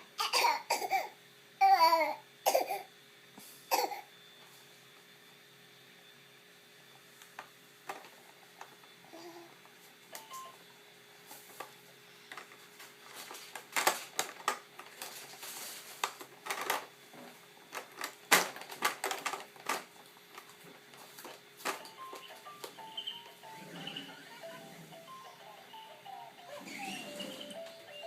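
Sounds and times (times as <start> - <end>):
baby coughing: 0.2 - 2.9, 3.7 - 4.1.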